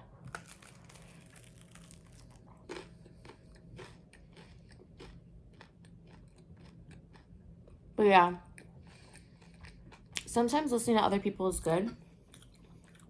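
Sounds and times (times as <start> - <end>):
crunchy bread chewing: 0.1 - 7.9, 8.5 - 10.3, 12.2 - 13.0.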